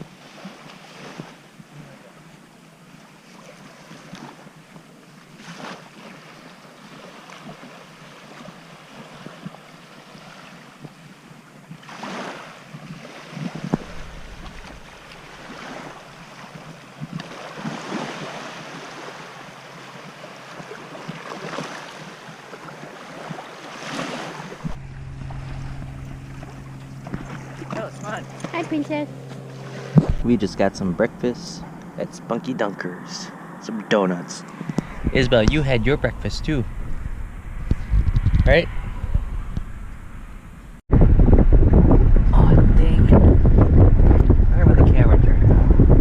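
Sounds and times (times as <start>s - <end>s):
waves washing onto beach: 0.0s - 32.3s
wind on microphone: 12.7s - 18.4s, 24.4s - 32.0s, 34.4s - 46.0s
low hum: 13.6s - 17.6s, 24.4s - 46.0s.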